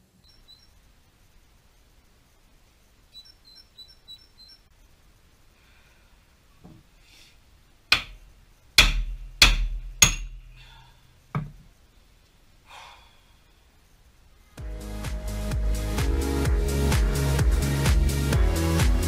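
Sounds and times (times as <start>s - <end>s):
sharp metal knocks: 7.9s - 8.2s, 8.8s - 10.5s.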